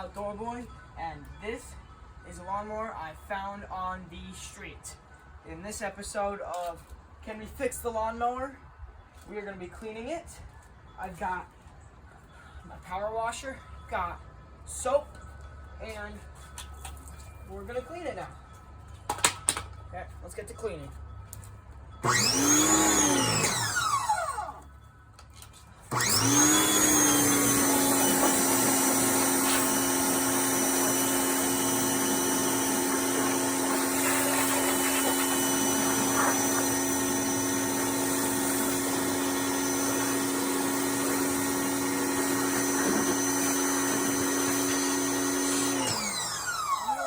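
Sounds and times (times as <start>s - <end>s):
power washer motor running: 22.0s - 24.6s, 25.9s - 47.0s.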